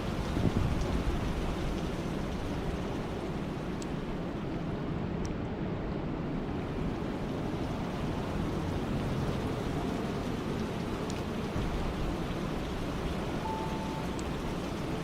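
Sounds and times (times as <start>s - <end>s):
steady rain: 0.0s - 15.0s
faint drip ticks: 3.6s - 4.1s, 10.4s - 11.9s, 12.6s - 15.0s.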